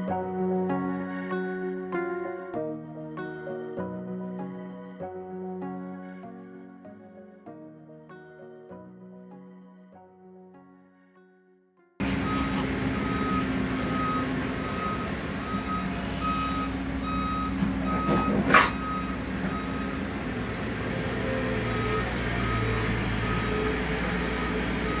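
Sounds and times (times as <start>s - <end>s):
diesel engine drone: 12.0s - 25.0s
reversing alarm beeping: 12.0s - 25.0s
rising squeal: 12.0s - 25.0s.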